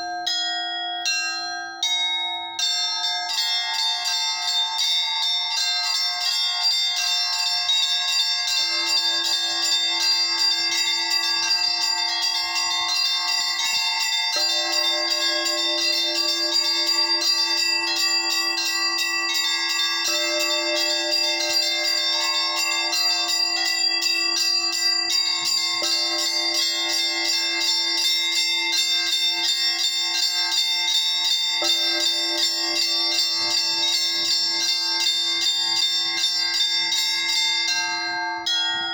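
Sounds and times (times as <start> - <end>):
large church bells ringing: 0.0 - 38.9
small church bells ringing: 0.0 - 38.9
deep bell ringing: 8.5 - 28.0.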